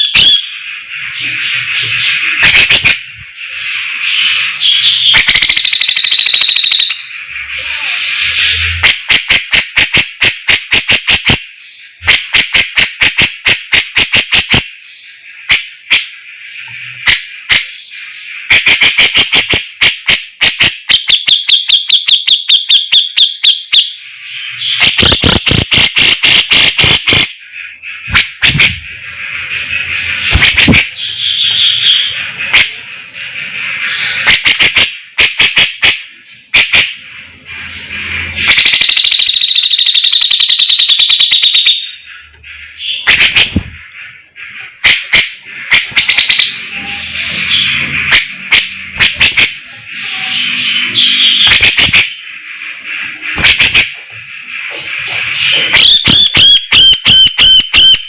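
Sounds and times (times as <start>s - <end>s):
bird singing sharp trills: 27.4s - 34.3s.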